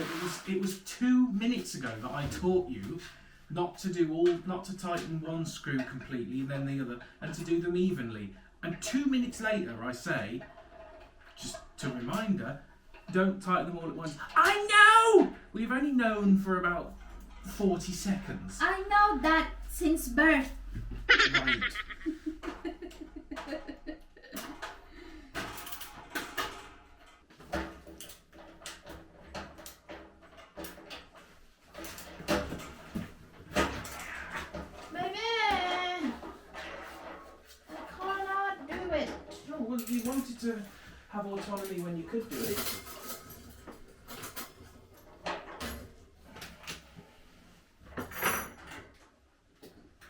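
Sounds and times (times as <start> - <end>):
barbecue parts clattering: 21.0 - 35.0, 35.6 - 46.6.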